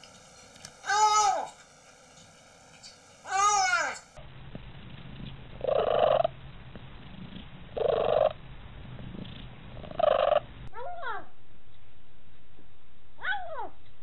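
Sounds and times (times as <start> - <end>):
cat purring: 4.9 - 10.6
cat throaty calls: 9.9 - 10.4.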